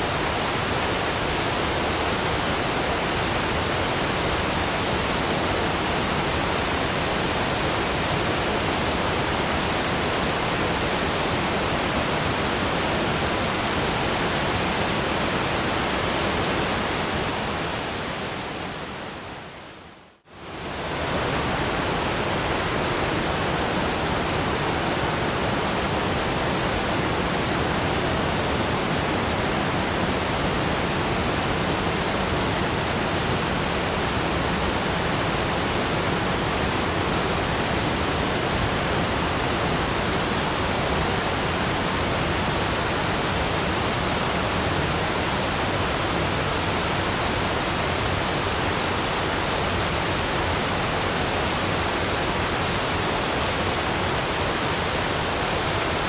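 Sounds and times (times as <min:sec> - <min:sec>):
waterfall rushing: 0:20.4 - 0:56.0.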